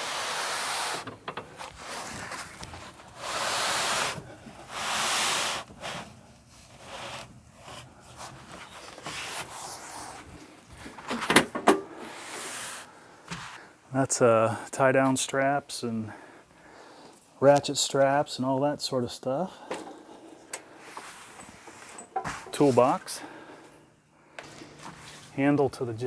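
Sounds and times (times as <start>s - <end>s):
gear scuffing across carpet: 0.0s - 11.1s, 12.0s - 13.7s, 20.8s - 23.2s, 24.4s - 25.9s.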